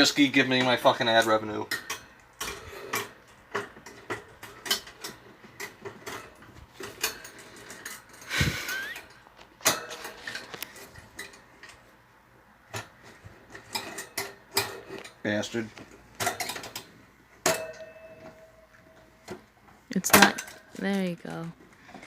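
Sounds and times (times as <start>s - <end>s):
cage parts clicking and rattling: 0.5s - 11.9s, 12.7s - 18.4s.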